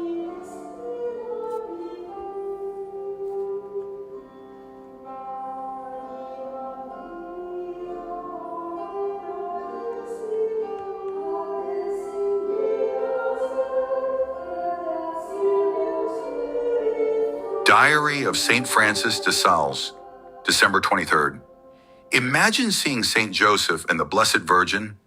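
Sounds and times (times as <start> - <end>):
slow singing voices: 6.0 - 24.9.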